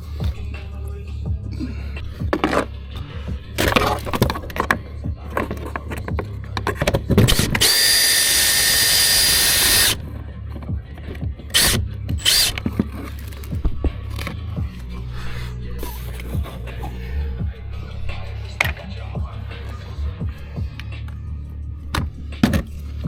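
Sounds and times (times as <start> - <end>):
power tool running: 7.2 - 10.0, 11.6 - 12.6.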